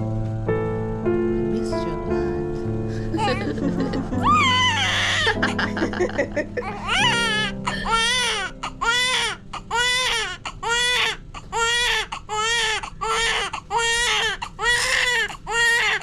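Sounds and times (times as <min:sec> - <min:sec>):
newborn baby crying: 0:03.0 - 0:16.0.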